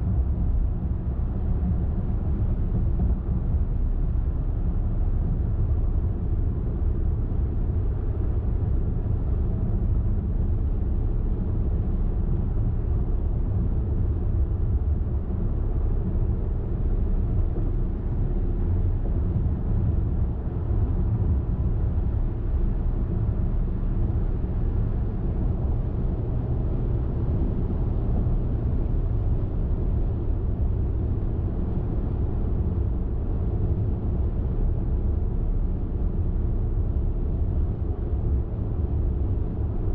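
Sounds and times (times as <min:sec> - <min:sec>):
car driving on highway: 0:00.0 - 0:39.9.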